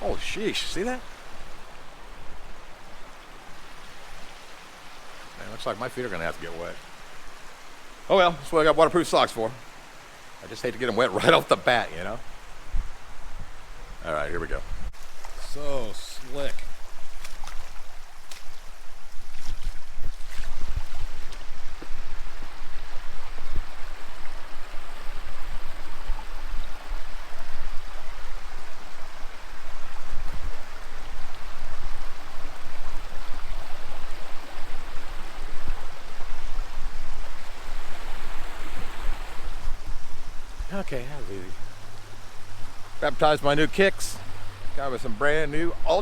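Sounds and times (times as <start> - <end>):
creek rushing over rocks: 0.0 - 46.0
footsteps wading in water: 16.5 - 22.0.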